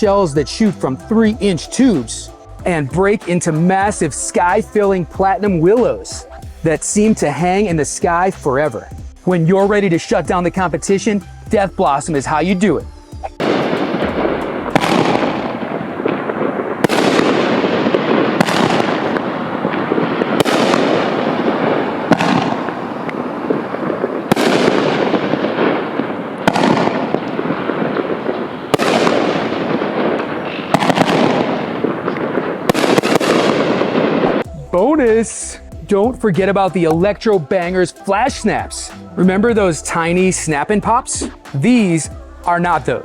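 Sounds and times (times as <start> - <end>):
rumble of fireworks: 13.3 - 34.5.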